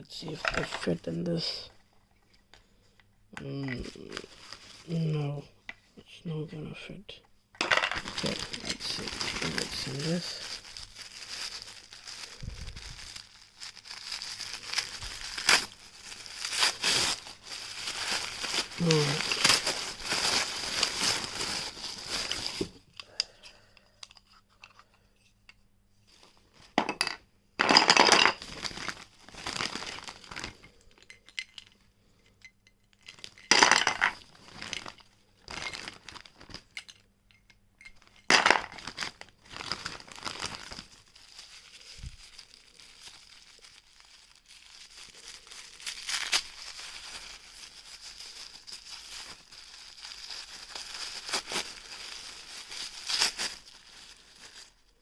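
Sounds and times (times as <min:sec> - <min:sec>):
plastic packaging crinkling and tearing: 0:03.4 - 0:05.4, 0:07.7 - 0:23.0, 0:28.1 - 0:31.0, 0:32.9 - 0:36.8, 0:38.0 - 0:55.0.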